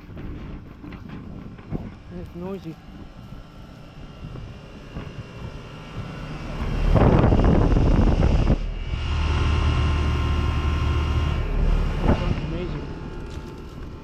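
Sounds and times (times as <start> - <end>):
compressor hum with clear tone: 0.0 - 14.0
rush of fan air: 0.0 - 14.0.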